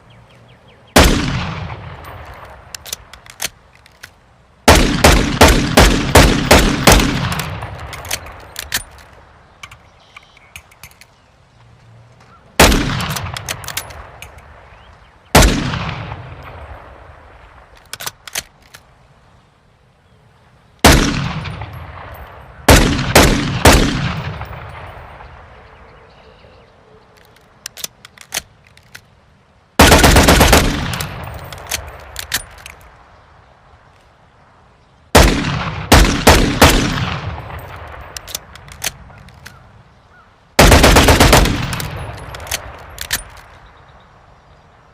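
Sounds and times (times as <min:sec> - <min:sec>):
pistol gunshots with echo: 0:01.0 - 0:03.1, 0:04.7 - 0:08.9, 0:12.6 - 0:14.4, 0:15.3 - 0:17.0, 0:20.8 - 0:25.6, 0:29.8 - 0:32.5, 0:35.2 - 0:39.1, 0:40.6 - 0:43.4.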